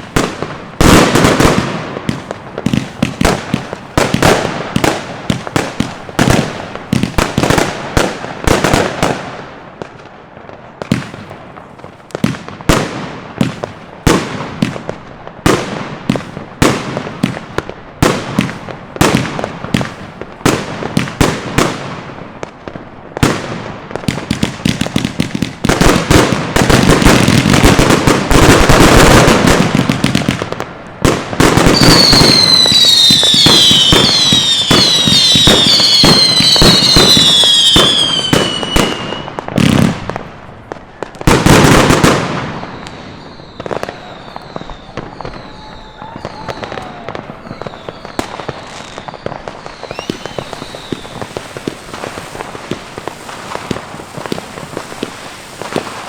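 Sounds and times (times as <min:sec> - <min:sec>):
fireworks bangs and crackling: 0:00.0 - 0:56.0
falling firework whistles: 0:31.4 - 0:39.8, 0:41.4 - 0:56.0.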